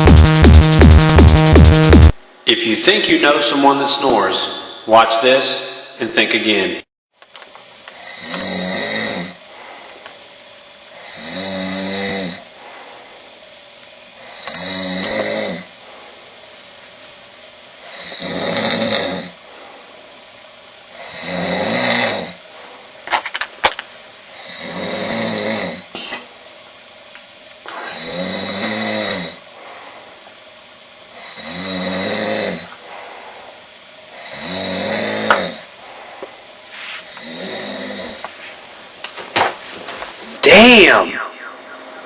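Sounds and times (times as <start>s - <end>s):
man snoring loudly: 8.0s - 9.4s, 11.0s - 12.5s, 14.2s - 15.8s, 17.8s - 19.4s, 21.0s - 22.4s, 24.4s - 25.9s, 27.8s - 29.4s, 31.2s - 32.8s, 34.2s - 35.7s, 37.1s - 38.2s.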